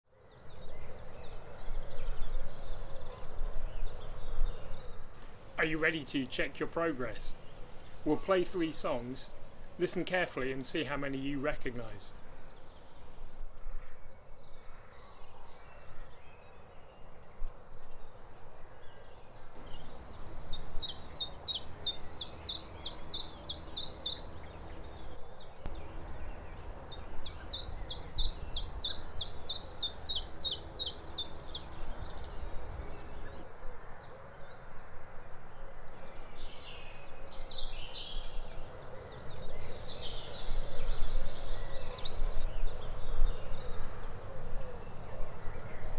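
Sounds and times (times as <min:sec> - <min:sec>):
treecreeper high-pitched song: 0:05.5 - 0:07.4
chiffchaff singing: 0:19.6 - 0:25.1, 0:25.7 - 0:33.4.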